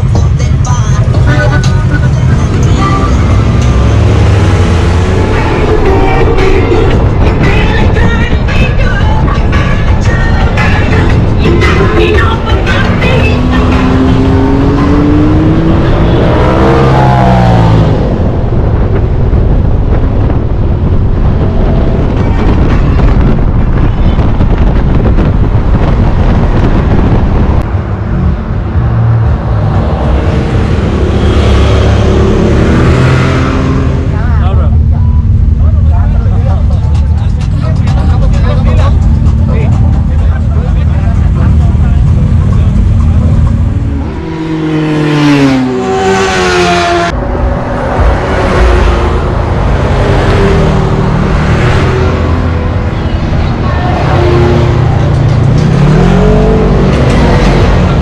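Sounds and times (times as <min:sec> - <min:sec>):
vehicle engine running: 0:00.0 - 0:58.0
wind buffeting microphone: 0:03.4 - 0:37.1.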